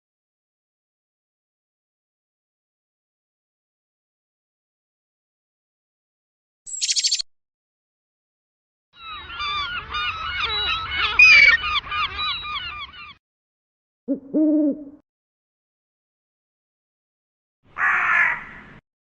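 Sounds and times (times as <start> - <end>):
geese honking: 9.1 - 13.0.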